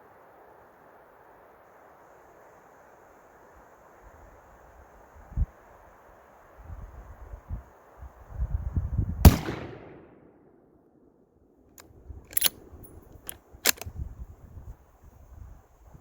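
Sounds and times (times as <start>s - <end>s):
rifle shot: 9.2s - 10.3s
rifle bolt clicks: 12.3s - 12.6s, 13.2s - 13.9s.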